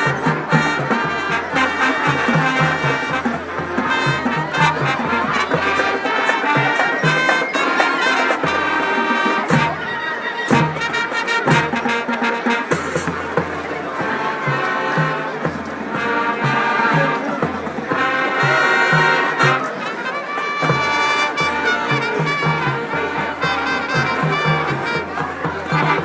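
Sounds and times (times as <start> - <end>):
drum hits: 0.0 - 9.9, 20.6 - 26.0
marching band playing swing: 0.0 - 26.0.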